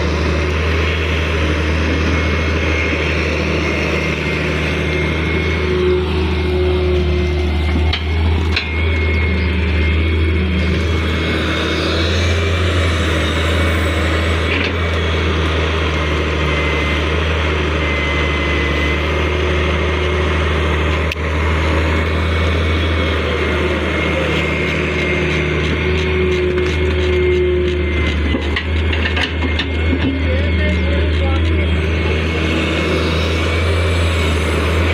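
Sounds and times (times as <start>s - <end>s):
heavy machinery diesel engine: 0.0s - 34.9s
thin steady whine: 0.0s - 34.9s.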